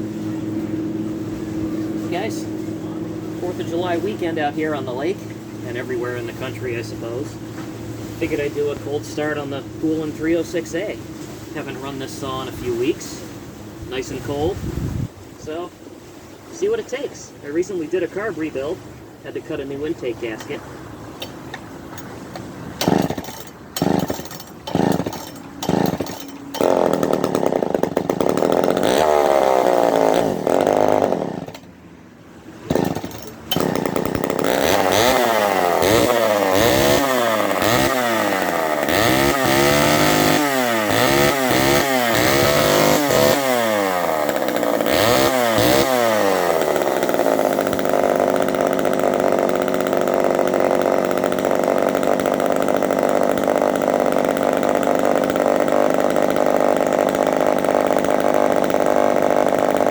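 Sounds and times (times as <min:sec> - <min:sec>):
chainsaw engine revving: 0:00.0 - 0:14.6, 0:16.6 - 0:31.8, 0:32.5 - 0:59.9
starter cord pulls: 0:21.2 - 0:31.8, 0:32.6 - 0:59.9.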